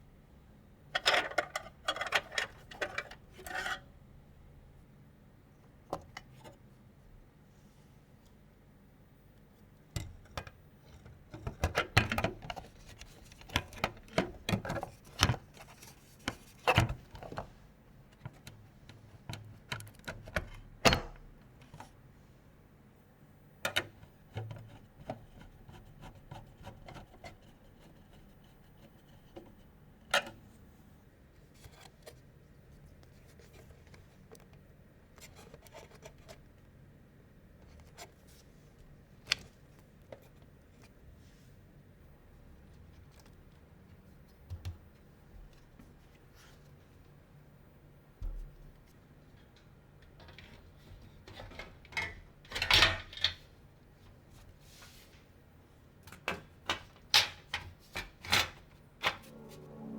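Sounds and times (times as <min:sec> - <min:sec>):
clicks and taps of computer parts: 0:23.6 - 0:25.2.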